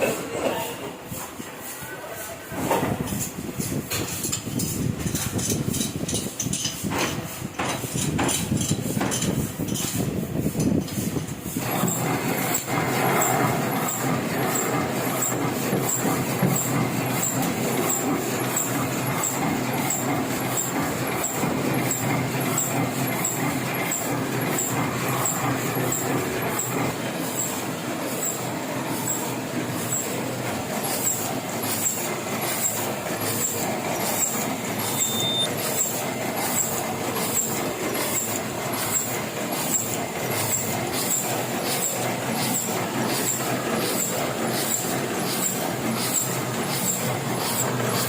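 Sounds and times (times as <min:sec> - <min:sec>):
printing press running: 0:00.0 - 0:48.0
regular mechanical clicking: 0:03.1 - 0:48.0.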